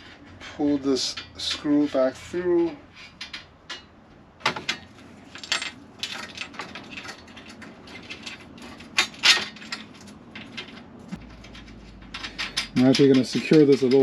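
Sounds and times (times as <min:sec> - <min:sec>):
small clicks and metallic clatter: 0:04.6 - 0:14.0.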